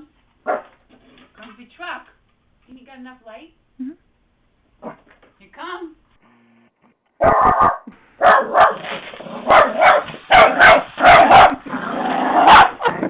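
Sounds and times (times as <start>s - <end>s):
puppy barking sharply: 0.4s - 0.7s, 7.2s - 8.9s, 9.5s - 11.6s, 12.4s - 12.8s.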